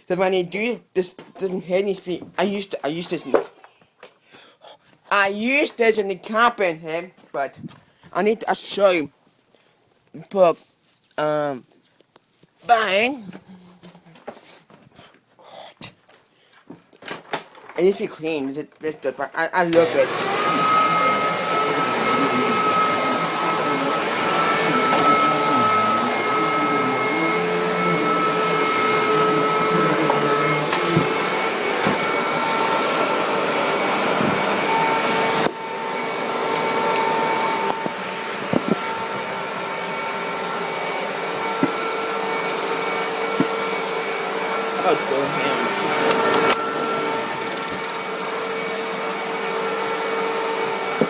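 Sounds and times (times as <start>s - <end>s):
vacuum cleaner motor whine: 19.7s - 51.0s.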